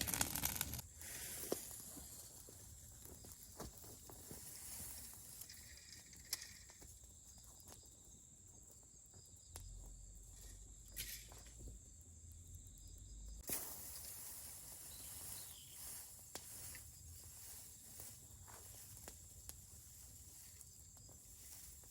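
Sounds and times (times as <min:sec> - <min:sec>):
loud fire snaps: 0:00.0 - 0:00.9, 0:15.9 - 0:16.9, 0:18.0 - 0:20.1
fire crackling and popping: 0:00.0 - 0:12.5, 0:13.4 - 0:21.9.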